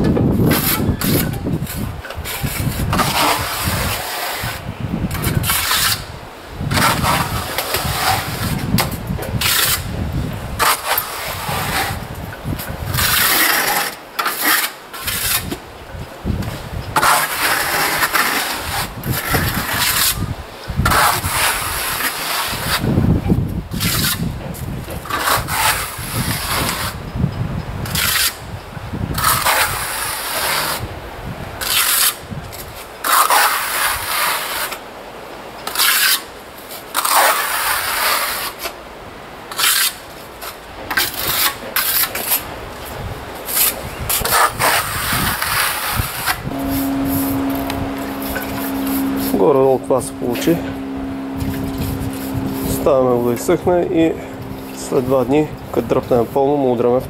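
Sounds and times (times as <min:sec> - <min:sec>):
steel trowel scraping: 0:00.5 - 0:06.1, 0:09.4 - 0:09.9, 0:10.6 - 0:12.0, 0:12.9 - 0:15.6, 0:17.0 - 0:22.9, 0:25.0 - 0:27.0, 0:27.9 - 0:28.4, 0:29.2 - 0:30.8, 0:31.6 - 0:32.2, 0:35.6 - 0:36.3, 0:36.9 - 0:38.7, 0:39.5 - 0:40.0, 0:43.5 - 0:56.5.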